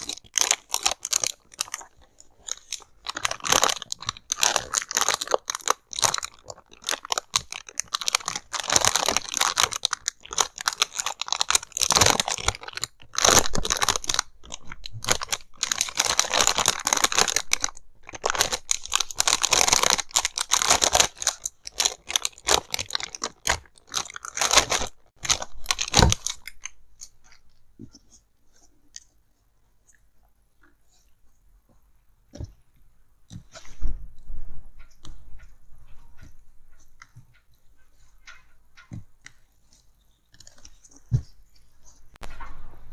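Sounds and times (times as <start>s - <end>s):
packaging crinkling and tearing: 0.0s - 27.4s.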